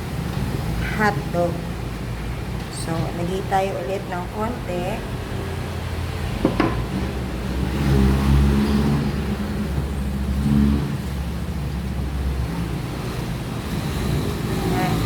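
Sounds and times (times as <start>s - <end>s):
vehicle engine rumbling: 0.0s - 15.0s
sharp knocks: 6.4s - 7.1s.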